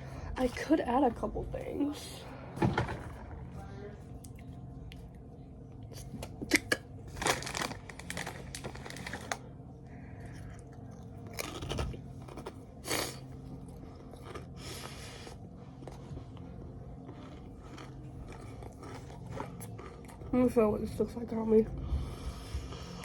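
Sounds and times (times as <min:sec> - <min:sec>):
rustling and crinkling: 0:07.1 - 0:09.5.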